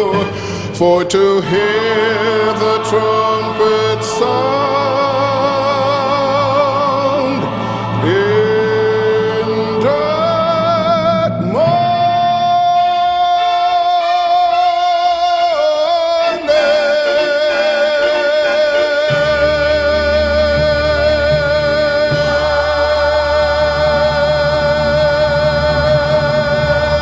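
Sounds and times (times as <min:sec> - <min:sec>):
gospel singing with vibrato: 0:00.0 - 0:27.0
instrumental accompaniment chord: 0:12.4 - 0:27.0.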